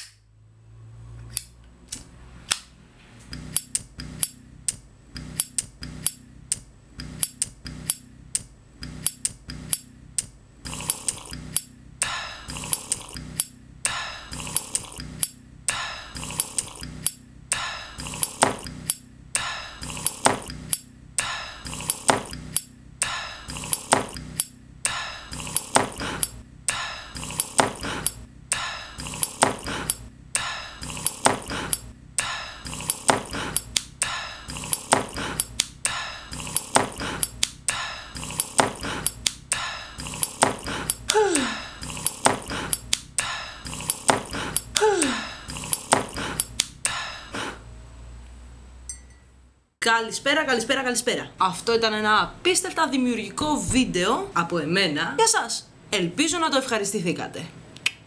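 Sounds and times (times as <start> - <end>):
rhythmic tapping and clinking: 3.3 - 47.4.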